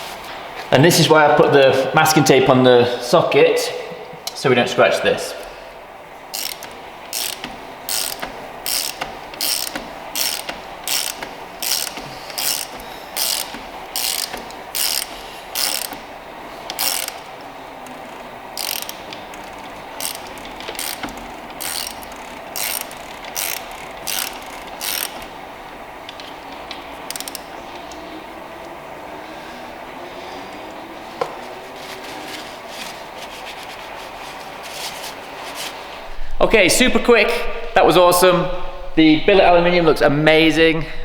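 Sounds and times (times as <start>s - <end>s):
ratchet wrench clicking: 6.3s - 16.1s, 16.7s - 25.4s, 27.1s - 27.5s.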